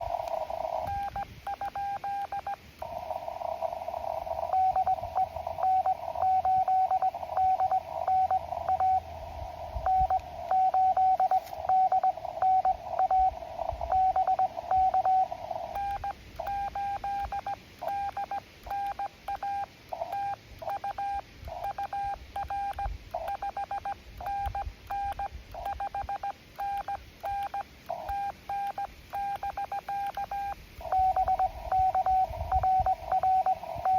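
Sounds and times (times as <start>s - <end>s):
morse code tone: 0.0s - 33.9s
receiver hiss: 0.0s - 33.9s.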